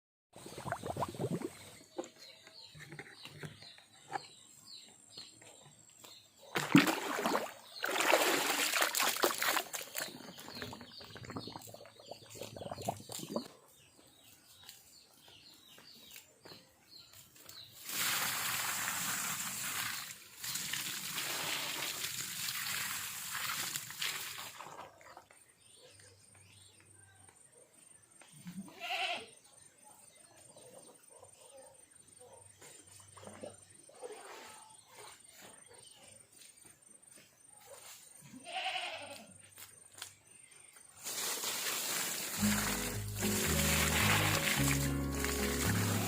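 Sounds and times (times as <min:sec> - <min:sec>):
water running and sloshing: 0:06.6 - 0:13.5, 0:41.0 - 0:46.0.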